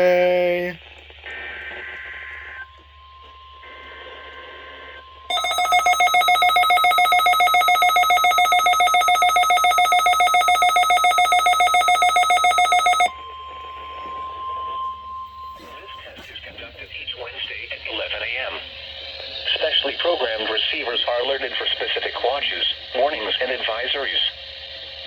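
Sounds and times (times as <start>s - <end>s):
rapidly pulsing alert beep: 5.3s - 13.1s
electronic data tones: 5.3s - 16.2s
steady high tone: 5.3s - 16.8s.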